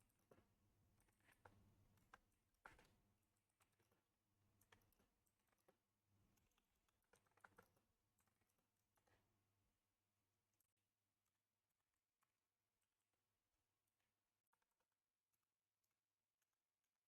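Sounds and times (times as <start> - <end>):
faint keyboard typing: 0.0 - 9.4.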